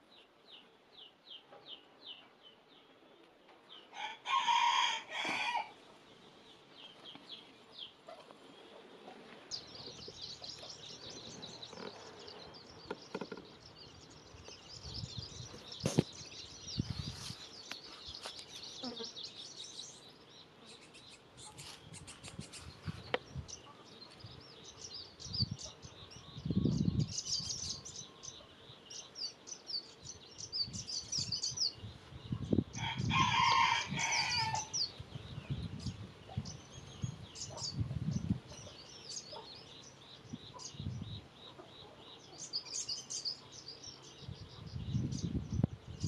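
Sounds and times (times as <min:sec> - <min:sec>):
small birds chirping: 0:00.0 - 0:46.0
rooster crowing: 0:03.9 - 0:05.8, 0:32.8 - 0:34.8.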